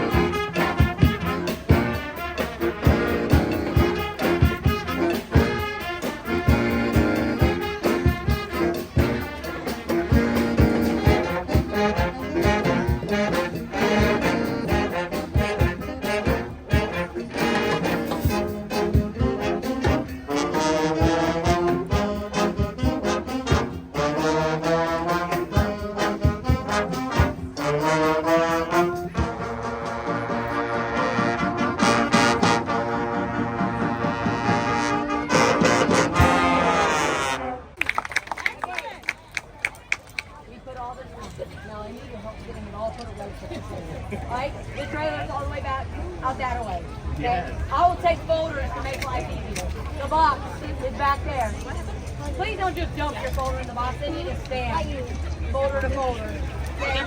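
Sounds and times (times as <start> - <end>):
steady drum beat: 0.0 - 36.9
upbeat brass music: 0.0 - 37.9.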